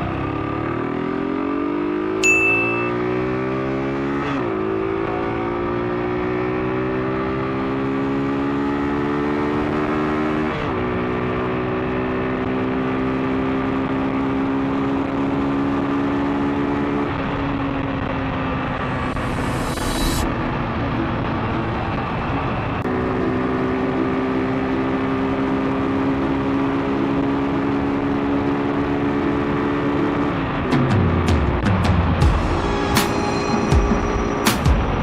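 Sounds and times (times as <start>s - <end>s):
motorcycle engine accelerating: 0.0s - 35.0s
wind rush: 17.3s - 22.8s.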